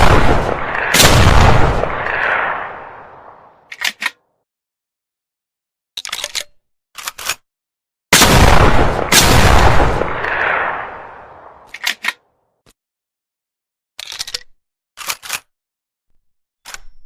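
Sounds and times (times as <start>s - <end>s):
shotgun blasts with echo: 0.0s - 3.6s, 8.2s - 11.7s.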